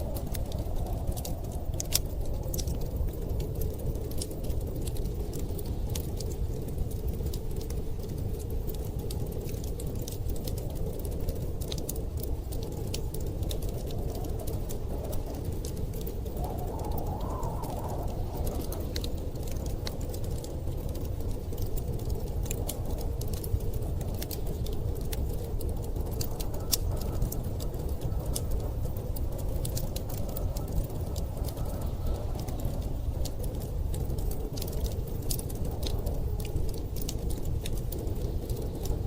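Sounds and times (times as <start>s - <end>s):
storm wind rumbling: 0.0s - 39.0s
wood fire crackling and popping: 0.0s - 39.0s.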